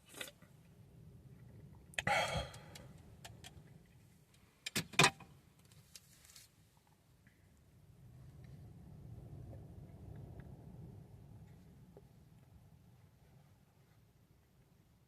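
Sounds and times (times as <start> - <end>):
low steady rumble: 0.0 - 4.6, 5.3 - 15.0
short rustle: 5.8 - 6.6.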